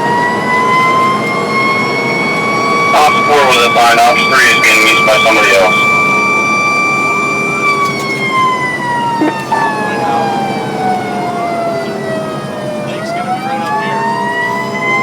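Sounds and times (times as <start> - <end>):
fire truck siren wailing: 0.0 - 15.0.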